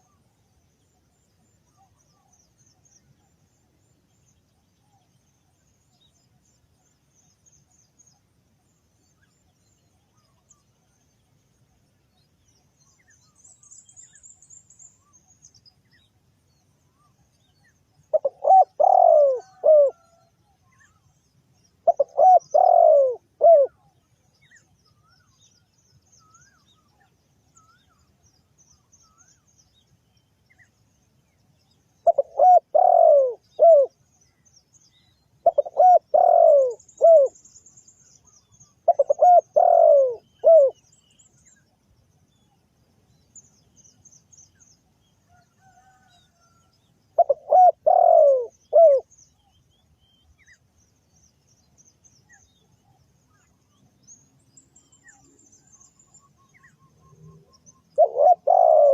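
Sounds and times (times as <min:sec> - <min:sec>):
small birds chirping: 0:00.0 - 0:58.9
dove cooing: 0:18.1 - 0:20.3, 0:21.8 - 0:23.9, 0:32.0 - 0:34.0, 0:35.4 - 0:37.4, 0:38.8 - 0:40.8, 0:47.2 - 0:49.1, 0:58.0 - 0:58.9.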